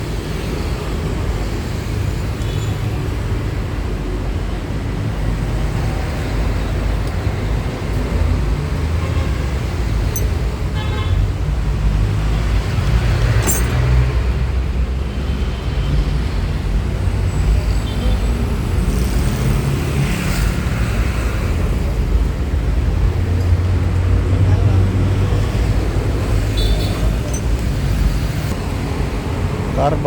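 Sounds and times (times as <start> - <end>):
road traffic rumble: 0.0 - 30.0
light clicks and clinks: 10.0 - 10.5, 13.4 - 14.1, 26.6 - 28.2.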